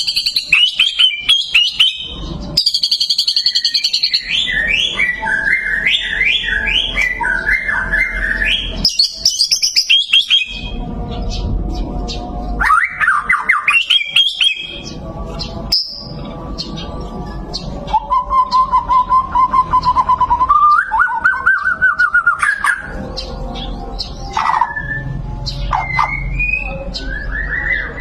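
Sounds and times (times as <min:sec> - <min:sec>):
bird singing whistled phrases: 0:00.0 - 0:10.8, 0:12.6 - 0:14.9, 0:17.9 - 0:22.9, 0:24.4 - 0:28.0
bird rapid trill: 0:00.0 - 0:28.0.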